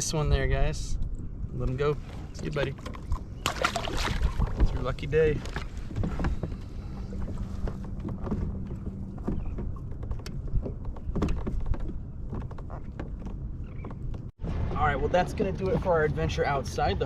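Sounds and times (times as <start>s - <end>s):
wind buffeting microphone: 0.0s - 17.0s
water against hull: 0.9s - 14.4s
small knocks on hull: 5.4s - 14.3s.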